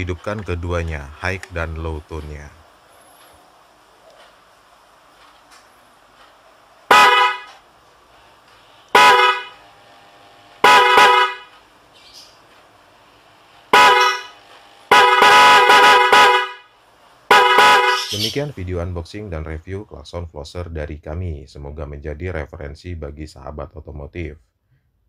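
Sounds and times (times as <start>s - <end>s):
two-tone car horns honking: 6.9s - 7.6s, 8.9s - 9.6s, 10.6s - 11.6s, 13.7s - 18.3s.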